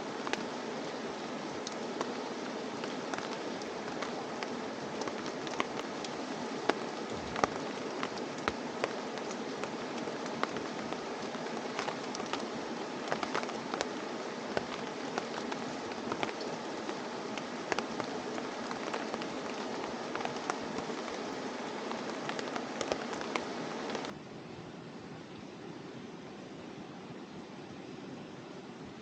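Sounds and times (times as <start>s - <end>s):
raindrops striking close by: 0.0s - 24.2s
rain falling steadily: 0.0s - 29.0s.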